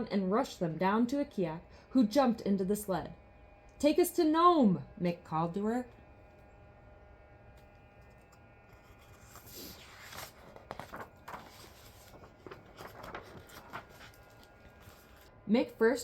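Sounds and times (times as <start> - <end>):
paper page turning: 8.0 - 15.3.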